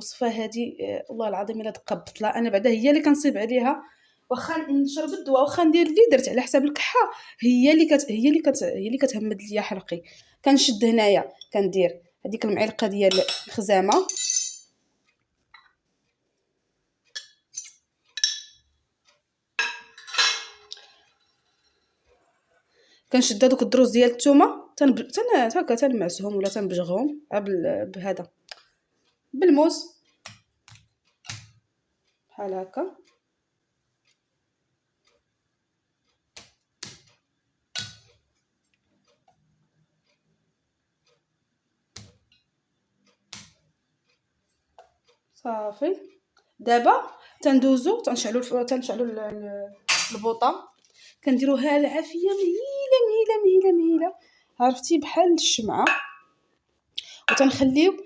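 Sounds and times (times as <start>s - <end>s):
spoon clinking against saucepan: 13.1s - 14.7s, 17.1s - 18.7s, 19.6s - 21.0s, 55.8s - 56.3s, 57.3s - 57.6s.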